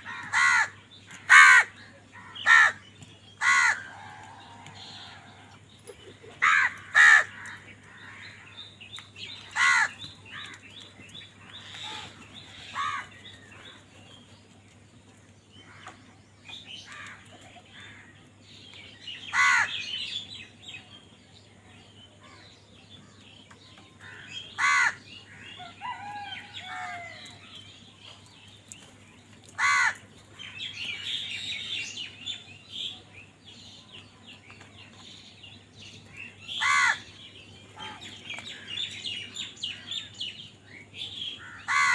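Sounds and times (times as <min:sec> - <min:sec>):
crows cawing: 0:00.0 - 0:02.8, 0:03.4 - 0:05.5, 0:06.4 - 0:08.5, 0:09.5 - 0:10.6, 0:11.6 - 0:13.4, 0:19.3 - 0:19.8, 0:24.0 - 0:27.3, 0:29.6 - 0:30.1, 0:36.5 - 0:37.1, 0:41.4 - 0:41.9
birds chirping: 0:00.0 - 0:41.9.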